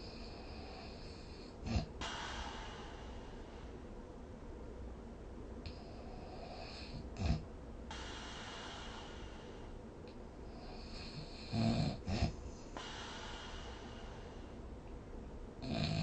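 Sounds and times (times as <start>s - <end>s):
snort: 0.0s - 2.1s, 5.7s - 7.4s, 10.6s - 13.2s, 15.6s - 16.0s
person snoring: 10.5s - 12.4s, 15.6s - 16.0s.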